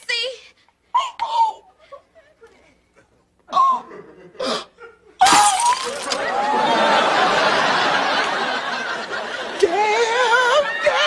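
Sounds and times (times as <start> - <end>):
studio audience laughter: 6.2 - 9.6.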